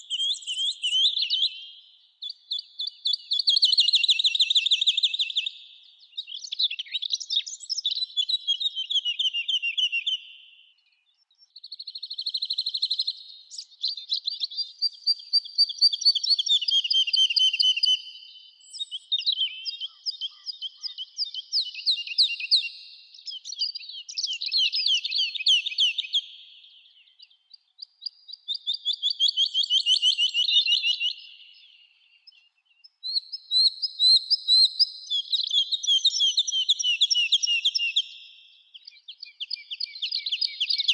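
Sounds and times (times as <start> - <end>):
songbird trilling: 0.0 - 5.6, 18.6 - 27.3, 28.3 - 31.7.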